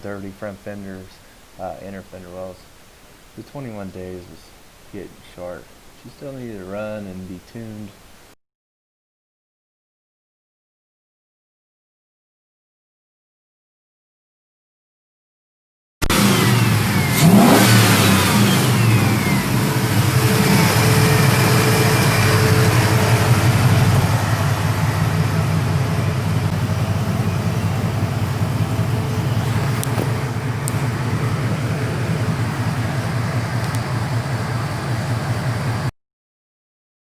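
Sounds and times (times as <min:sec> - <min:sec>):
car engine running: 0:16.1 - 0:35.9.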